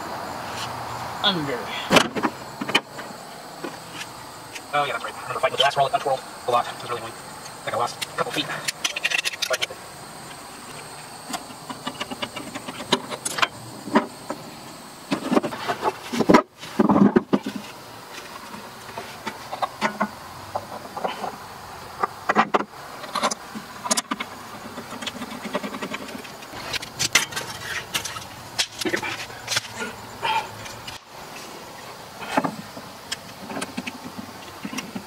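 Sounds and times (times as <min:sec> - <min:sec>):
knocks and rustling: 0:01.9 - 0:04.7, 0:15.1 - 0:21.4
metal clicks and rattles: 0:08.0 - 0:09.7, 0:22.0 - 0:29.8.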